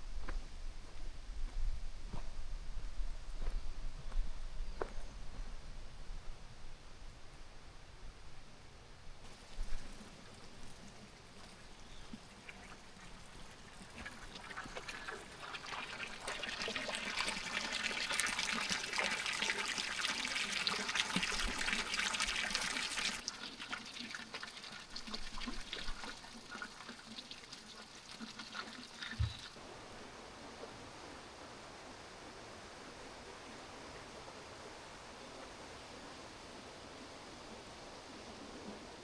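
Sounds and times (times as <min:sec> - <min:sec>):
water trickling and splashing: 0:09.2 - 0:29.6.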